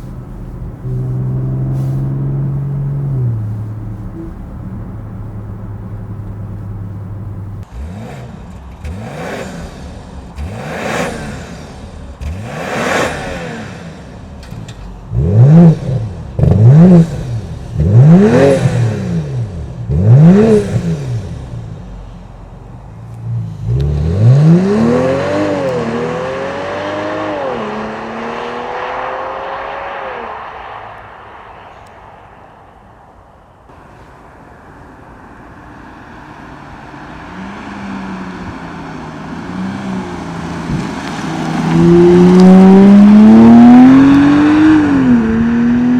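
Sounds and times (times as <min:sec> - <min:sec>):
rushing noise: 0:00.0 - 0:07.6, 0:28.3 - 0:35.5
car accelerating away: 0:00.0 - 0:33.9, 0:35.4 - 0:45.9
car engine idling and revving: 0:00.0 - 0:45.9.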